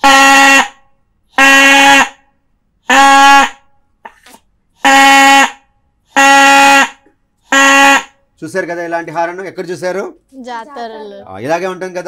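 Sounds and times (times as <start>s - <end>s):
reed horn toots: 0.0s - 2.3s, 2.9s - 3.6s, 4.8s - 8.3s.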